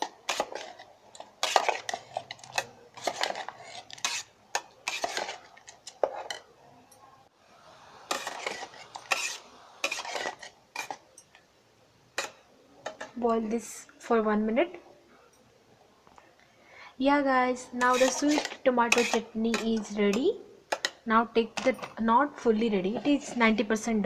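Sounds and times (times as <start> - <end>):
spoon scraping inside kettle: 0.0 - 6.4, 8.1 - 11.0, 17.8 - 19.8.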